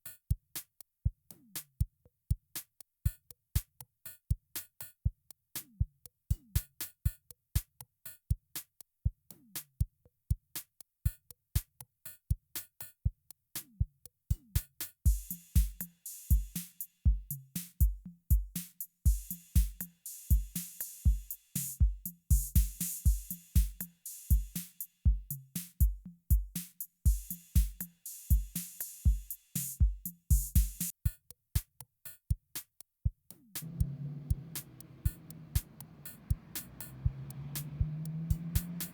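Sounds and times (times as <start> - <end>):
drum machine beat clicks: 13.6 - 32.7, 33.3 - 38.9
deep kick drum: 15.1 - 30.9.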